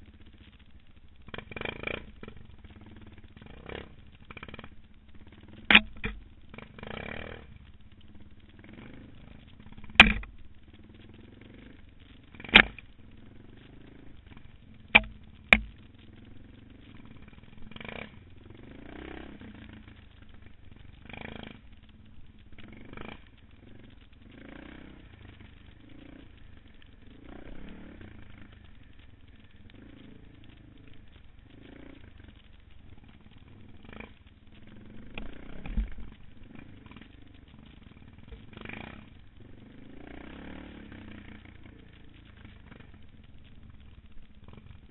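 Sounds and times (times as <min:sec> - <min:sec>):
motorcycle engine rumbling: 0:00.0 - 0:44.9.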